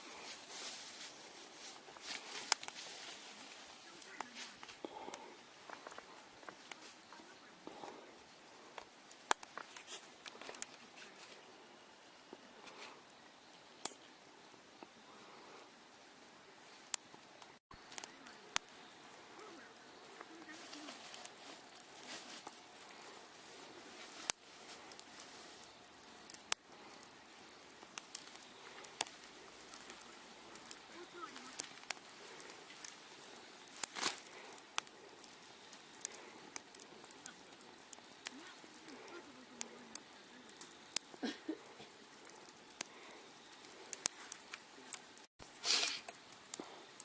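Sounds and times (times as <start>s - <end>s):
campfire crackling and popping: 0.0s - 47.0s
low hiss: 0.0s - 47.0s
sharp pops: 9.1s - 10.8s.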